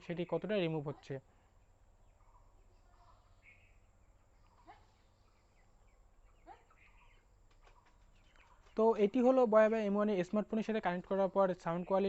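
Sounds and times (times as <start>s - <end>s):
faint bird chirps: 0.9s - 9.1s.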